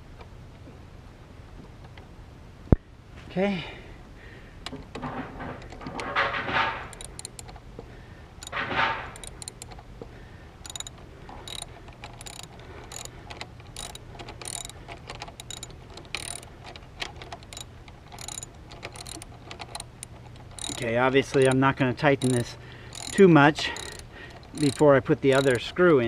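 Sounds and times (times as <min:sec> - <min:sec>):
ratchet wrench clicking: 0:06.9 - 0:07.6, 0:08.4 - 0:09.8, 0:10.6 - 0:25.7.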